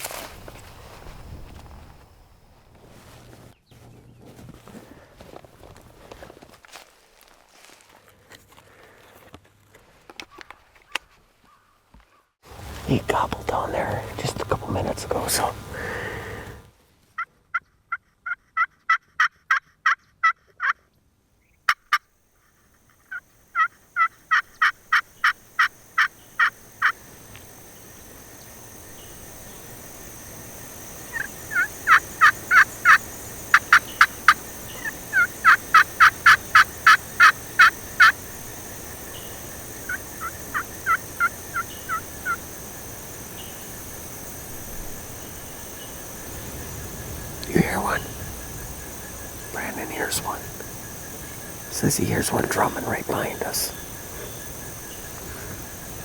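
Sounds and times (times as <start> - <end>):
turkey yelping: 23.6 - 27.0, 31.0 - 38.3, 39.2 - 42.5.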